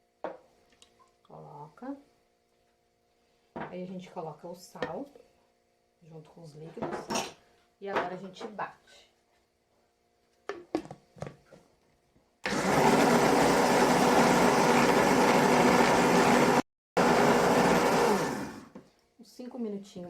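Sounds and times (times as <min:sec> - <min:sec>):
blender motor running: 0:12.4 - 0:18.8.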